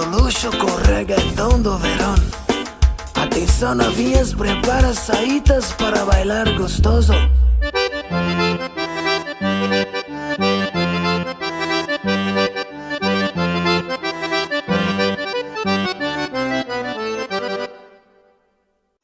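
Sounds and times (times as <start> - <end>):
instrumental music with chords: 0.0 - 18.9
repeating bass line: 0.2 - 2.6, 3.2 - 5.0, 5.8 - 11.3.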